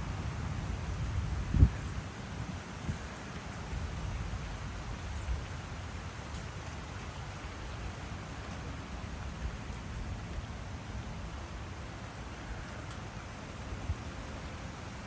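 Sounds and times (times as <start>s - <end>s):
low thunder rumble: 0.0s - 3.0s
rain falling: 0.0s - 15.0s.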